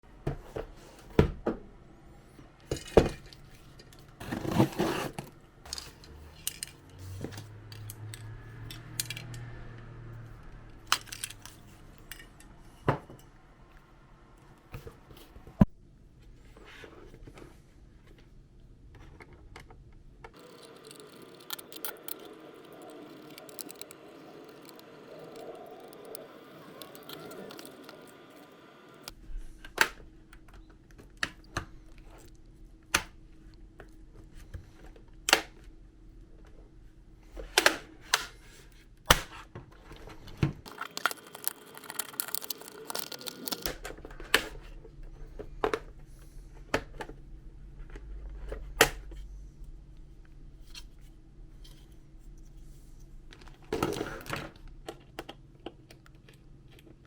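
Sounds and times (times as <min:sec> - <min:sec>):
plastic keyboard parts clicking: 0:07.7 - 0:09.4, 0:10.7 - 0:12.3, 0:19.2 - 0:28.5, 0:40.7 - 0:44.6.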